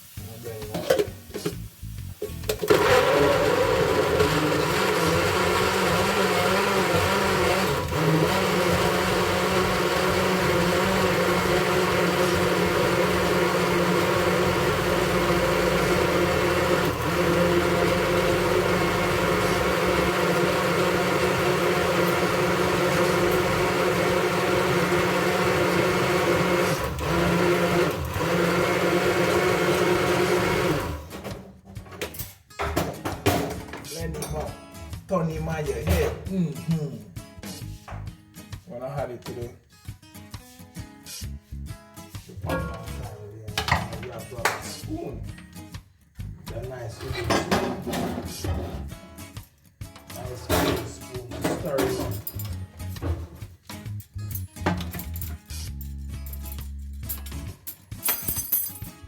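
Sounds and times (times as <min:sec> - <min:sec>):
blender motor running: 0:02.6 - 0:31.2.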